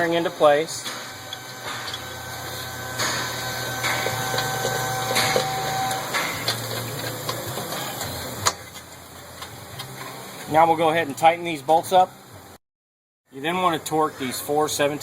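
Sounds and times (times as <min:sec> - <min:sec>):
steady low hum: 0:00.0 - 0:10.9.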